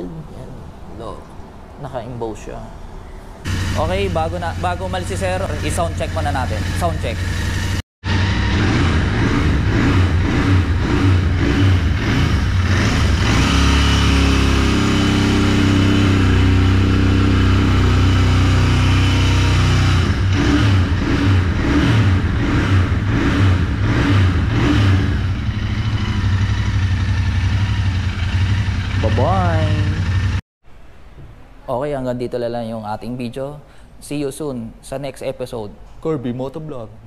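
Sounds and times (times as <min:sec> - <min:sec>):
motorcycle engine revving: 0:03.4 - 0:30.4.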